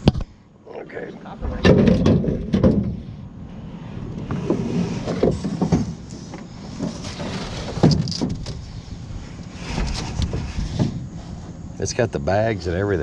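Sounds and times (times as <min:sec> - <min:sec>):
vehicle engine rumbling: 0:00.0 - 0:13.0
knocks and rattles: 0:01.4 - 0:03.2, 0:04.4 - 0:08.6.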